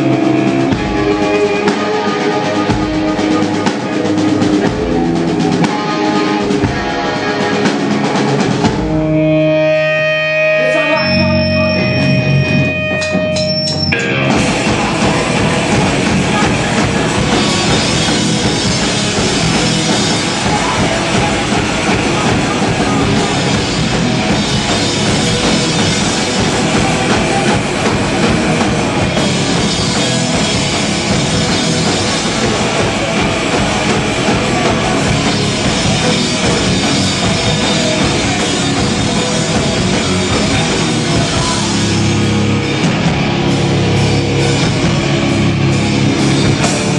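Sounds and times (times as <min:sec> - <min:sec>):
punk band playing live: 0:00.0 - 0:46.9
ringing guitar notes: 0:09.0 - 0:16.2.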